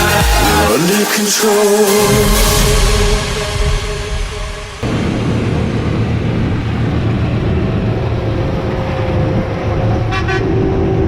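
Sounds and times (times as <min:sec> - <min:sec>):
engine low rumble: 0:03.0 - 0:11.0.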